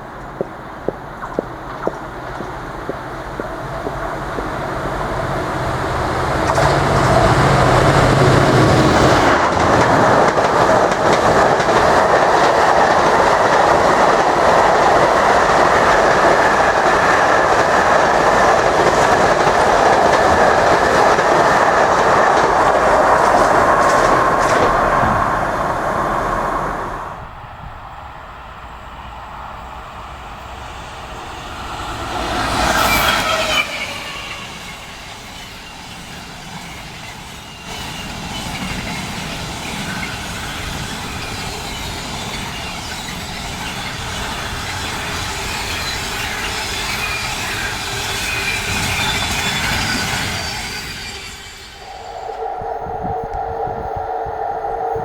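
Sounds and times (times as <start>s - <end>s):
locomotive engine: 0.0s - 35.8s
train wagons rumbling and clattering: 0.0s - 55.0s.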